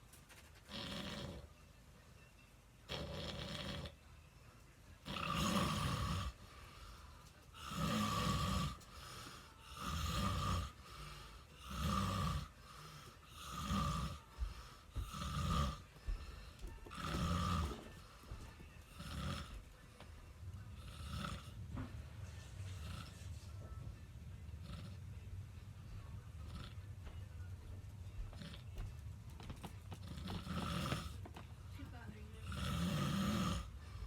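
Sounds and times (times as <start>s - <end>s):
loud rasping snores: 0.7s - 1.5s, 2.9s - 4.0s, 5.0s - 7.0s, 7.6s - 19.7s, 20.7s - 21.9s, 22.7s - 23.4s, 24.6s - 25.2s, 26.4s - 26.9s, 28.3s - 28.8s, 29.9s - 31.4s, 32.4s - 34.0s.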